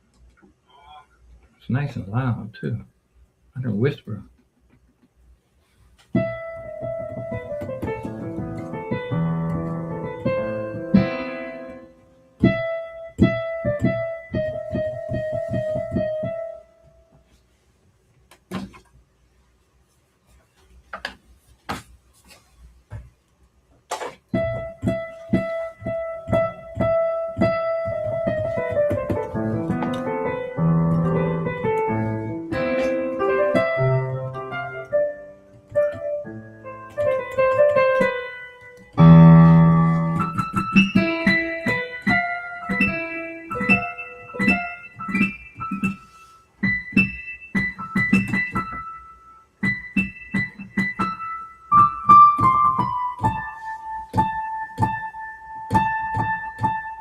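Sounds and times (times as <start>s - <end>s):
digital piano playing: 6.2s - 16.9s, 24.3s - 57.0s.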